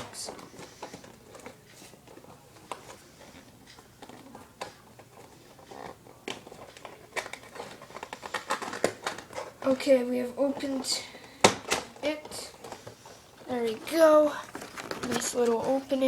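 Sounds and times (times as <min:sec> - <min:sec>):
packaging clicks and rustles: 0:00.0 - 0:16.0.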